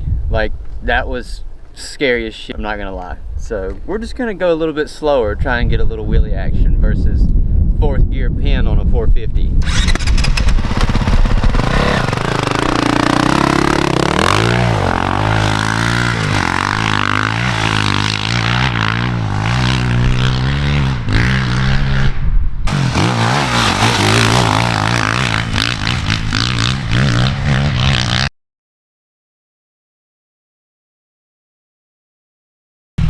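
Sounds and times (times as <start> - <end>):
dirt bike engine revving: 9.6 - 28.3.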